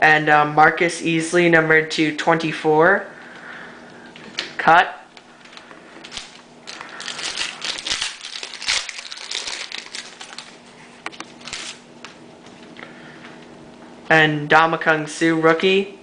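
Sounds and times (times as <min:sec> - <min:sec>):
plastic wrapper crinkling: 0:05.2 - 0:11.8.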